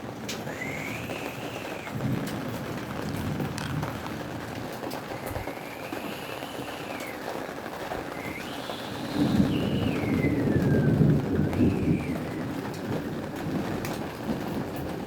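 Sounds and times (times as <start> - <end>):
steady rain: 0.0 - 15.0.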